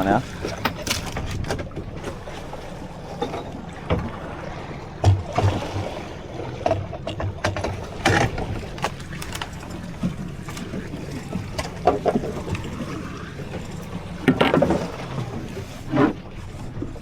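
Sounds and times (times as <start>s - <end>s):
wash of water: 0.0s - 16.8s
knocks on boat: 5.0s - 9.0s, 14.2s - 15.0s.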